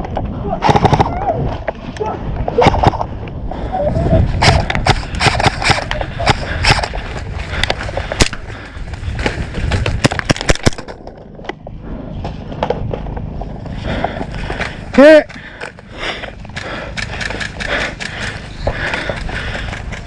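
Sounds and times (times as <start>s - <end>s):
low rumble: 0.0s - 20.0s
airsoft guns firing: 0.6s - 1.2s, 2.6s - 3.1s, 4.4s - 6.9s.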